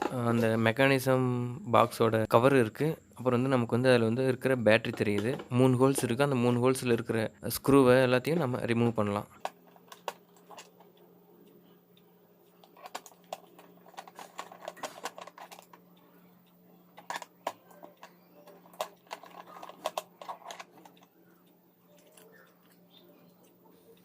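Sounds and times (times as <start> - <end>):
tool clicking and scraping on screws: 12.6 - 15.8, 17.0 - 21.1.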